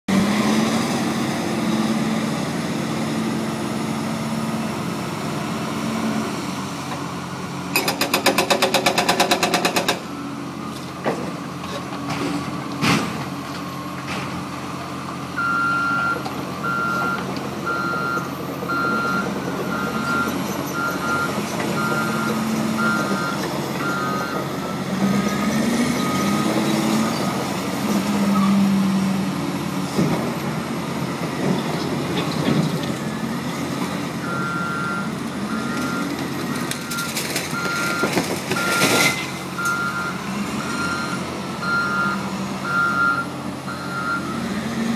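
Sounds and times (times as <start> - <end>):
diesel engines droning: 0.1 - 44.9
reversing alarm beeping: 15.4 - 27.2, 34.2 - 44.5.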